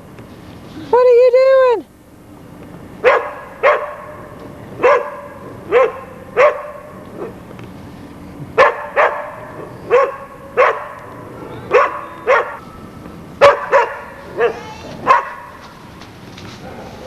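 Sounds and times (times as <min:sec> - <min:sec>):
dog barking: 0:03.0 - 0:07.4, 0:08.6 - 0:12.6, 0:13.4 - 0:15.6, 0:16.6 - 0:17.0.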